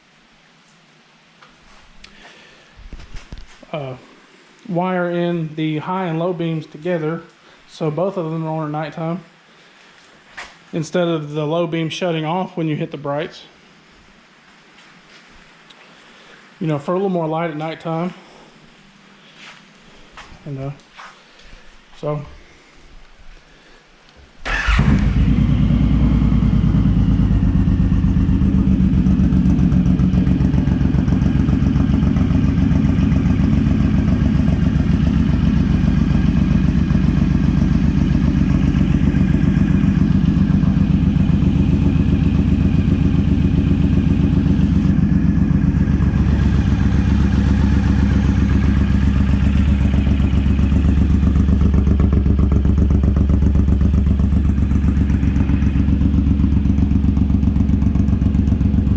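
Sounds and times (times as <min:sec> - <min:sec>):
motorcycle engine starting and idling: 0:24.4 - 0:58.9.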